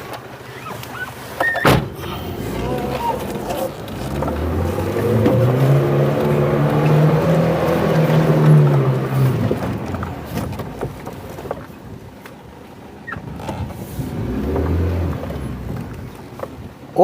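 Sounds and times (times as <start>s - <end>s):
engine droning under load: 1.7s - 11.8s, 13.8s - 16.8s.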